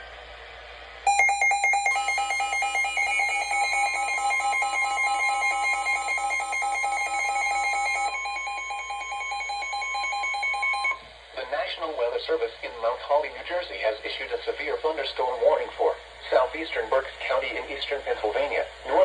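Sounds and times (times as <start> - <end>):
rapid shrill electronic beeping: 1.1 - 11.0
steady warning alarm tone: 1.1 - 11.0.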